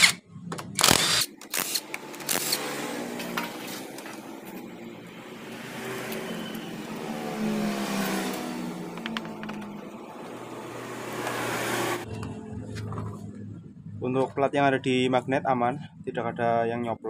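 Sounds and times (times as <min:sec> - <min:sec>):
vehicle engine running: 0:03.2 - 0:14.3.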